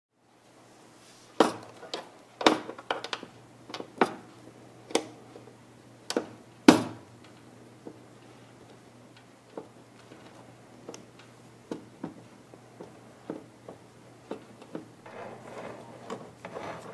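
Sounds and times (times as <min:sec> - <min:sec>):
faint steady hum: 0:00.2 - 0:16.9
clicks and knocks of hard parts: 0:01.4 - 0:04.3, 0:06.1 - 0:08.0.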